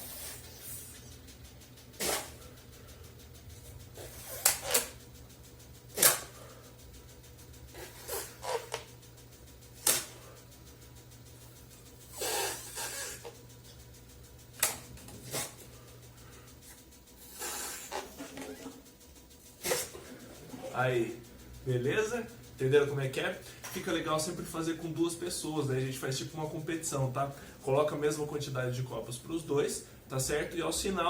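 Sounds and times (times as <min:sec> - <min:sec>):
breath blowing up a balloon: 0:12.0 - 0:13.4, 0:17.2 - 0:18.3, 0:19.6 - 0:20.3.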